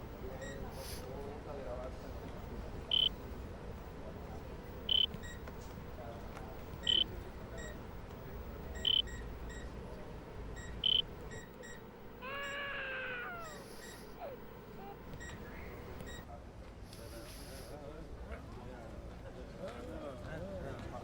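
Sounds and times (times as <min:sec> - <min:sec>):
patient monitor beeping: 0:00.1 - 0:00.7, 0:02.9 - 0:03.2, 0:04.7 - 0:05.5, 0:06.6 - 0:16.3
long falling cry: 0:12.2 - 0:14.4.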